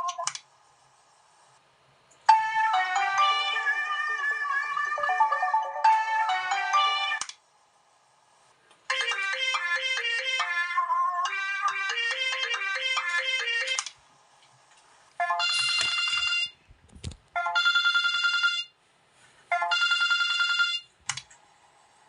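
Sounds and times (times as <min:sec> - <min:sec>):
electronic ringtone melody: 0:02.3 - 0:07.2, 0:08.9 - 0:13.8, 0:15.2 - 0:16.6, 0:17.4 - 0:18.7, 0:19.6 - 0:20.9
trilling electronic phone ring: 0:15.2 - 0:16.6, 0:17.4 - 0:18.8, 0:19.6 - 0:20.9.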